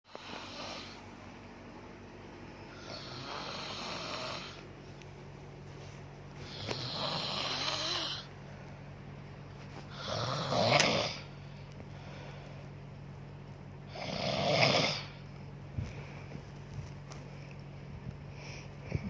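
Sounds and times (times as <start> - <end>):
woman snoring: 0.1 - 1.1, 2.7 - 4.6, 6.4 - 8.3, 9.9 - 11.3, 13.9 - 15.2.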